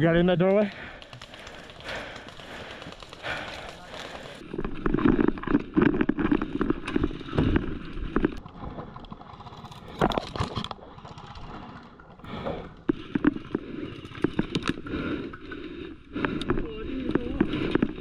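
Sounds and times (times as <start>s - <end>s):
sharp clicks and cracks: 0.4s - 11.5s.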